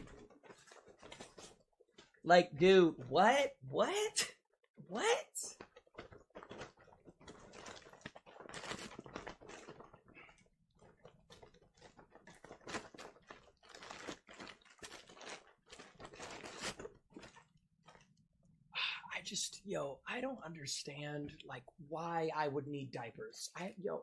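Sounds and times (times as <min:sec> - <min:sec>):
packaging crinkling and tearing: 0:05.6 - 0:18.0.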